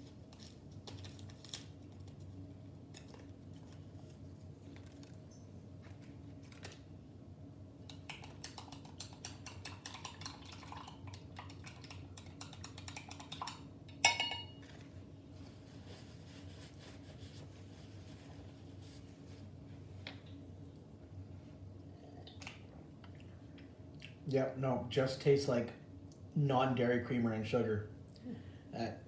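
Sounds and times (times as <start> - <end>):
spoon stirring in a cup: 7.9 - 14.8
spoon clinking against cup: 14.0 - 14.6.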